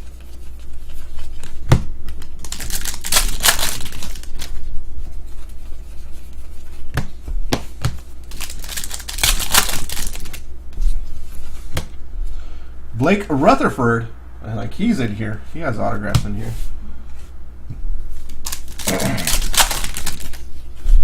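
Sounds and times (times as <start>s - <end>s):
wrappers torn and crinkled: 2.4s - 4.6s, 8.2s - 10.4s, 18.2s - 20.5s.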